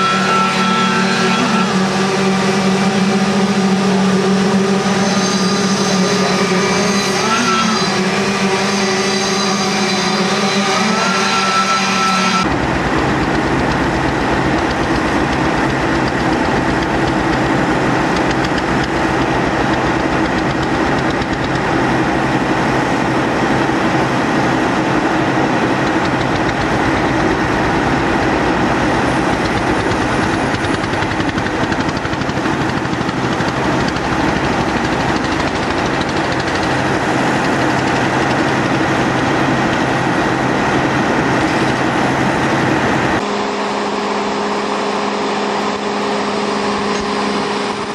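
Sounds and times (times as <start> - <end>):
engine humming steadily: 12.4 - 47.9.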